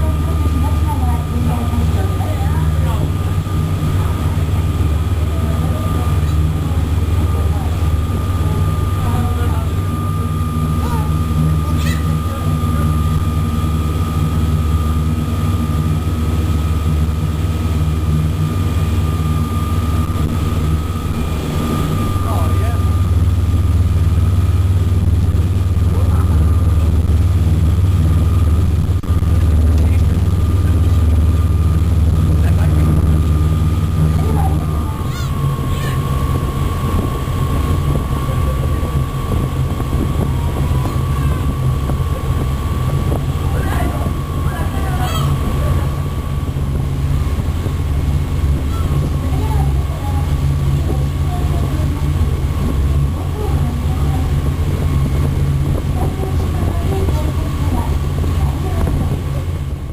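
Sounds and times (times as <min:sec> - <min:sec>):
boat engine droning: 0:00.0 - 0:59.9
thin steady whine: 0:00.0 - 0:59.9
faint seagull calls: 0:11.6 - 0:12.4, 0:34.8 - 0:36.2, 0:40.2 - 0:41.6, 0:44.7 - 0:45.9, 0:48.6 - 0:49.2.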